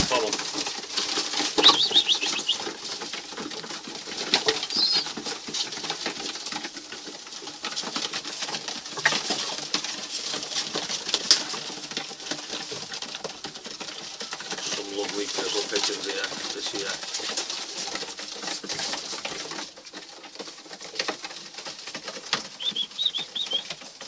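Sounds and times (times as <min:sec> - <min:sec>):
pigeon wing flaps: 0:00.0 - 0:03.4
young pigeon squeak: 0:01.6 - 0:02.6, 0:04.6 - 0:05.1, 0:22.6 - 0:23.7.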